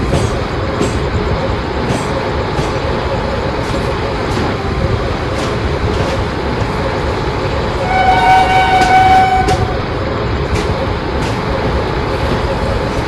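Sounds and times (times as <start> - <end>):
train rumbling past: 0.0 - 13.0
train horn: 7.8 - 9.8
wheels knocking on track: 7.8 - 13.0.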